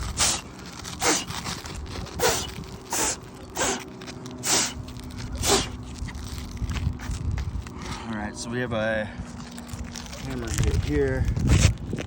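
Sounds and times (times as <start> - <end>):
puffs of air blowing: 2.2 - 4.8.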